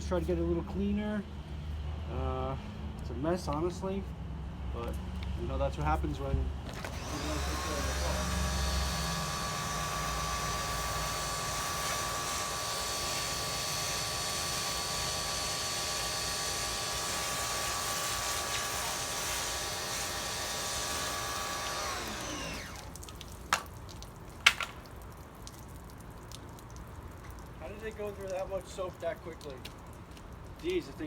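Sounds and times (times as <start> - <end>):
pressure washer motor running: 6.7 - 23.0
water spray hiss: 7.2 - 15.2.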